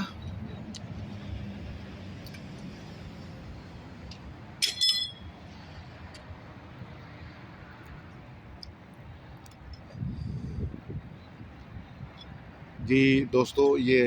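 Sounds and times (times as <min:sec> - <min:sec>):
metallic clinks: 0:04.6 - 0:05.3.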